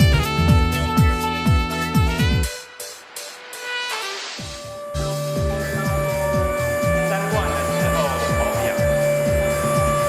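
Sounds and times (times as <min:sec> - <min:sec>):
electronic music with synth tones: 0:04.4 - 0:10.0.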